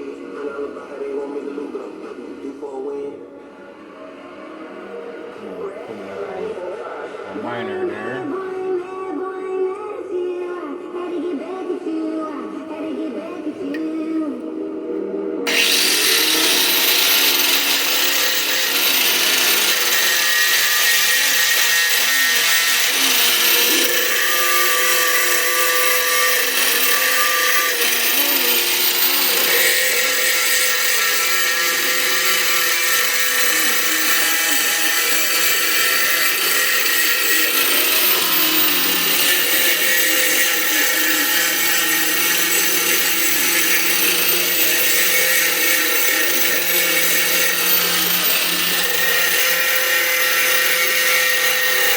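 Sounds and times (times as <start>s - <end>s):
angle grinder grinding steel: 15.5s - 51.9s.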